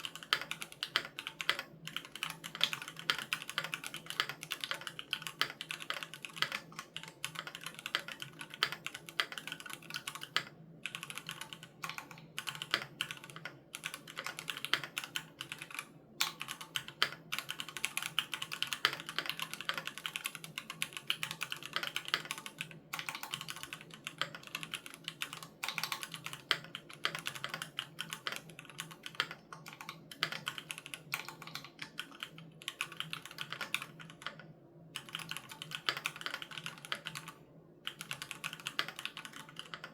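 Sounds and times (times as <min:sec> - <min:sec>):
typing on mechanical keyboard: 0:00.0 - 0:39.9.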